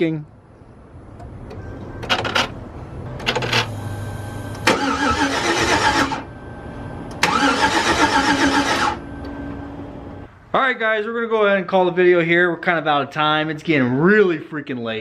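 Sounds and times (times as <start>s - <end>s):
engine cranking on starter: 4.6s - 6.3s, 7.2s - 9.0s.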